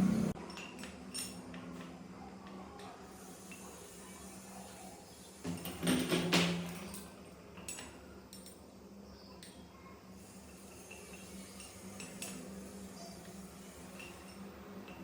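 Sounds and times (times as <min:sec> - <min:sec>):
light metallic clinks: 0:00.4 - 0:01.9, 0:05.5 - 0:09.7, 0:10.3 - 0:15.0.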